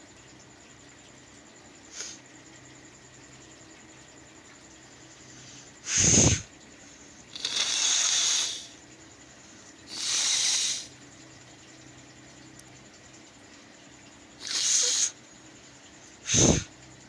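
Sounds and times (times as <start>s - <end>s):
person blowing nose: 7.4s - 8.6s, 9.9s - 10.9s, 14.4s - 15.1s, 16.3s - 16.6s.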